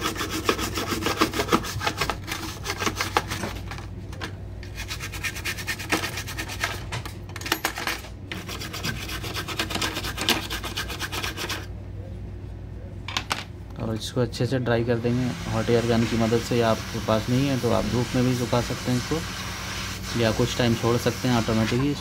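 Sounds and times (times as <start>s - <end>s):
scraping strokes on circuit board: 0.0s - 3.4s, 4.6s - 6.8s, 8.3s - 11.7s.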